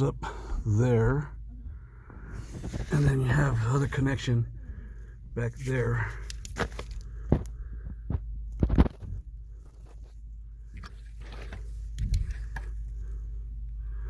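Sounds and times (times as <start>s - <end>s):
low steady hum: 0.0s - 14.0s
knocks and scrapes: 2.3s - 3.2s.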